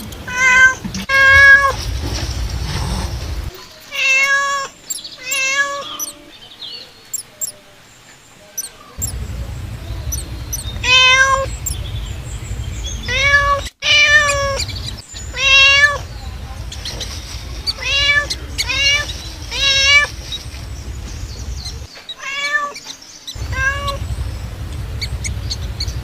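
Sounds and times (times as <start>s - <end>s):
cat meowing: 0.3s - 1.8s, 3.9s - 6.2s, 10.8s - 11.8s, 13.0s - 14.7s, 15.3s - 16.1s, 17.7s - 20.2s, 22.2s - 22.8s, 23.4s - 24.0s
low rumble: 1.3s - 3.5s, 9.0s - 21.9s, 23.4s - 26.0s
high-pitched chirps: 7.1s - 7.5s, 8.6s - 9.2s, 10.1s - 12.1s.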